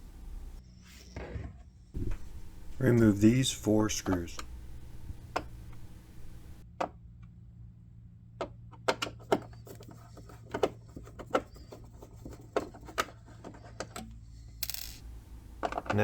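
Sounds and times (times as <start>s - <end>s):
faint steady hum: 0.0s - 0.7s, 2.0s - 6.6s, 14.0s - 16.0s
screwdriver tapping plastic panel: 4.0s - 6.6s.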